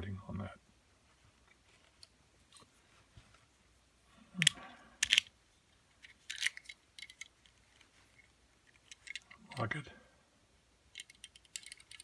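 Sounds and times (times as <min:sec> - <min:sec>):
padlock metallic clicks and scrapes: 0:04.4 - 0:05.3, 0:06.0 - 0:09.4, 0:10.9 - 0:12.0.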